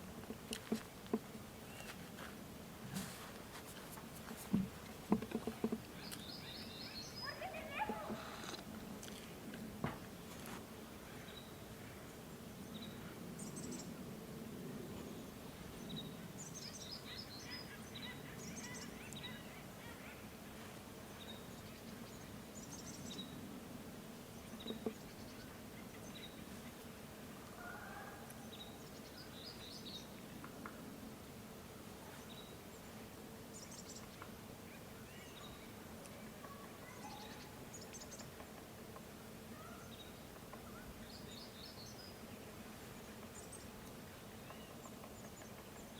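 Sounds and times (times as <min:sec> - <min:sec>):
birds chirping trills: 0:05.1 - 0:08.6.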